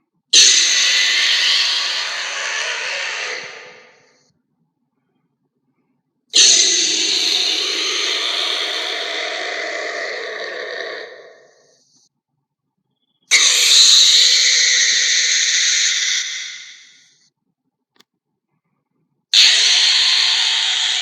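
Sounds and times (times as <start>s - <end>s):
creature harsh hissing calls: 0.3s - 4.2s, 6.4s - 11.8s, 13.3s - 17.2s, 19.3s - 21.0s.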